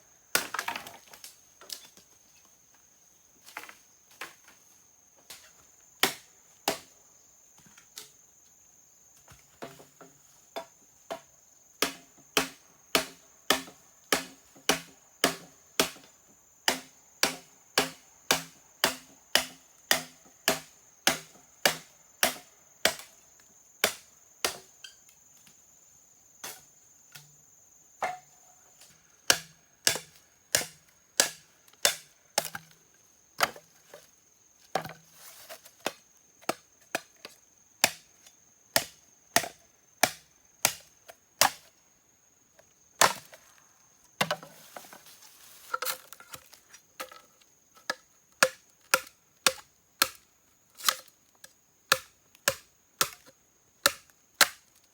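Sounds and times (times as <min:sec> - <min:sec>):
blade chopping wood: 0:11.8 - 0:16.0, 0:16.7 - 0:23.1, 0:29.3 - 0:32.8, 0:33.4 - 0:33.6, 0:35.6 - 0:38.1, 0:38.8 - 0:41.7, 0:43.0 - 0:43.4, 0:47.8 - 0:50.2, 0:50.8 - 0:51.1, 0:51.9 - 0:54.6.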